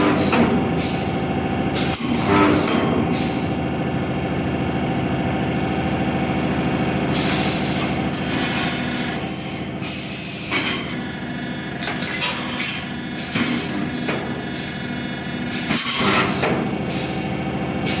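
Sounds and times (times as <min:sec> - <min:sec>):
welding machine humming: 0:07.2 - 0:18.0
machine clanks: 0:11.7 - 0:14.3, 0:15.5 - 0:16.7.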